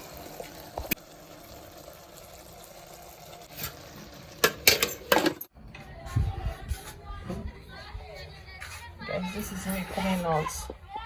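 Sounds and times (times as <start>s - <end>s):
objects knocking and clattering: 4.4s - 5.5s.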